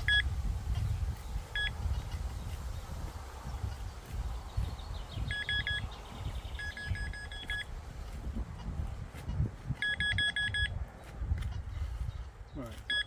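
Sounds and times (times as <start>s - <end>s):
metal detector beeping: 0.0s - 0.3s, 1.6s - 1.8s, 5.2s - 5.9s, 6.6s - 7.8s, 9.8s - 10.8s.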